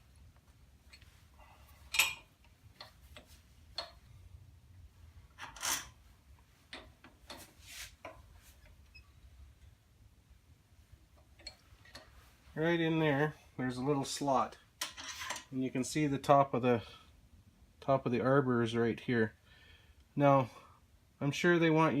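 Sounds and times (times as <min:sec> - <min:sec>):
light metal clicks and knocks: 0:01.9 - 0:04.2, 0:11.1 - 0:12.2.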